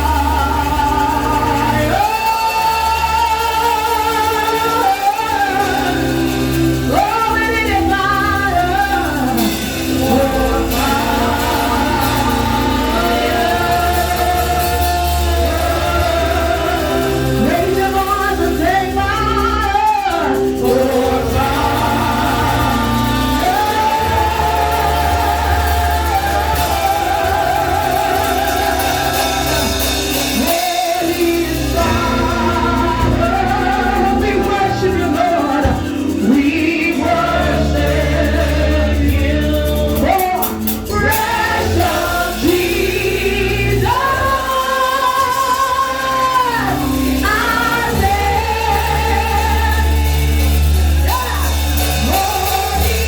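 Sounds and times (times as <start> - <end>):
congregation singing: 0.0 - 53.0
live band with steady bass: 0.0 - 53.0.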